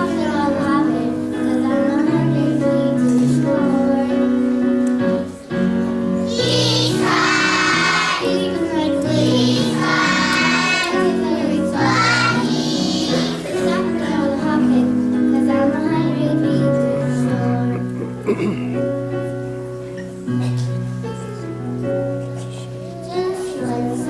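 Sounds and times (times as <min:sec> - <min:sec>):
children singing: 0:00.0 - 0:04.5, 0:06.2 - 0:17.8, 0:23.0 - 0:24.0
instrumental accompaniment: 0:00.0 - 0:24.0.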